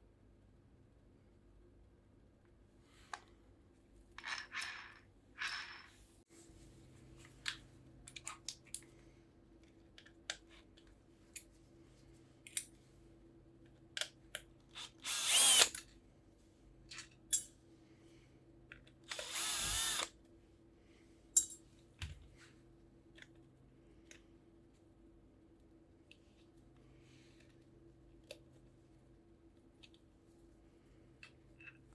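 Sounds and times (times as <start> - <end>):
cordless drill spinning: 14.8 - 15.8, 19.1 - 20.1.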